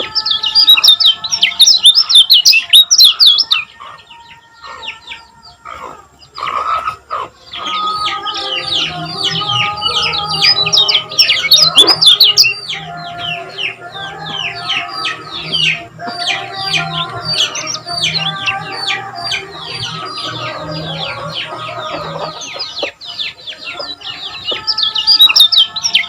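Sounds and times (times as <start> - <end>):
bird chattering chirps: 0.0 - 3.7, 5.7 - 26.0.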